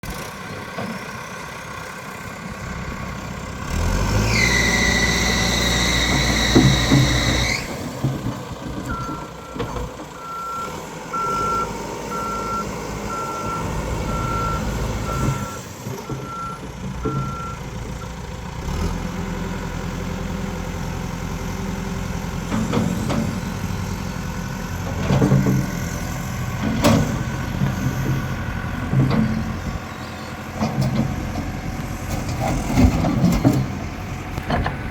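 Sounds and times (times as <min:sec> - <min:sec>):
diesel engine running: 0:00.0 - 0:34.9
reversing alarm beeping: 0:10.2 - 0:17.6.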